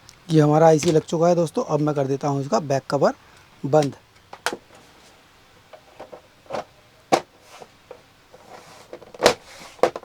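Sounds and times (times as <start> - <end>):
plastic cover clicks and knocks: 0.8 - 1.1, 3.8 - 4.6, 9.0 - 10.0.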